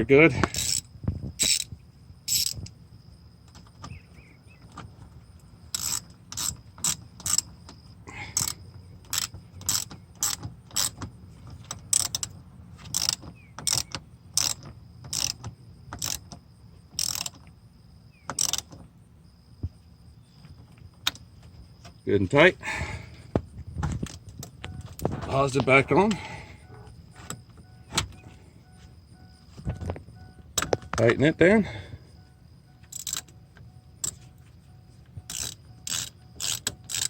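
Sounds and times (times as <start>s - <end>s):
ratchet wrench clicking: 0.4s - 2.8s, 5.7s - 16.4s, 17.0s - 17.5s, 18.3s - 18.8s, 32.8s - 33.4s, 35.3s - 37.0s.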